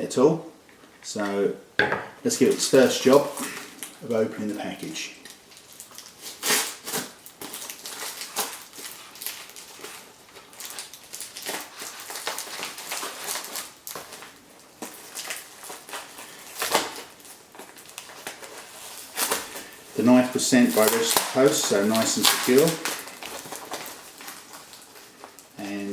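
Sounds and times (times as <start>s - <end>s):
knife cutting packaging: 6.0s - 25.4s.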